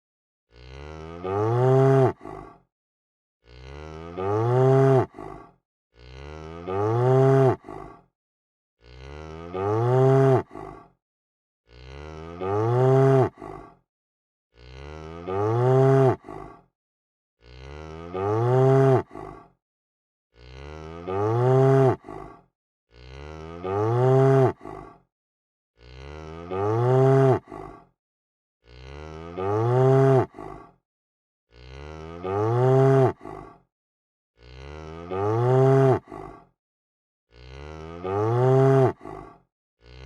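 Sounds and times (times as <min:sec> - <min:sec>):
cow mooing: 0:00.5 - 0:02.2, 0:03.4 - 0:05.1, 0:06.0 - 0:07.7, 0:08.8 - 0:10.6, 0:11.7 - 0:13.4, 0:14.6 - 0:16.3, 0:17.4 - 0:19.1, 0:20.4 - 0:22.1, 0:22.9 - 0:24.6, 0:25.8 - 0:27.5, 0:28.7 - 0:30.4, 0:31.5 - 0:33.2, 0:34.4 - 0:36.1, 0:37.3 - 0:39.0.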